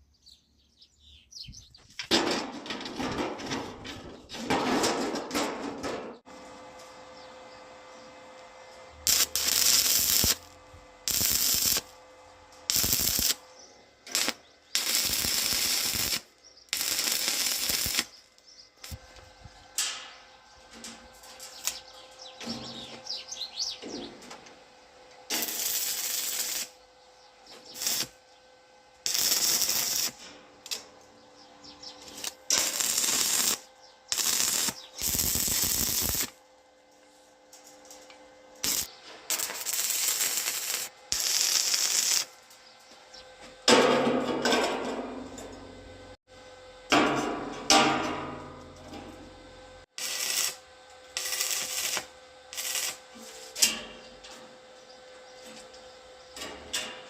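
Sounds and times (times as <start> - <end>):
faint machine hum: 0.0 - 57.0
arc welding crackling sizzle: 8.7 - 20.0, 20.8 - 24.0, 25.2 - 28.2, 28.9 - 36.4, 37.5 - 43.2, 48.2 - 57.0.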